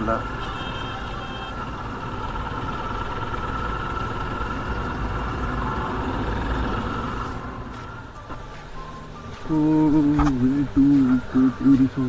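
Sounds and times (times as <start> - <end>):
motorcycle engine running: 1.3 - 7.9.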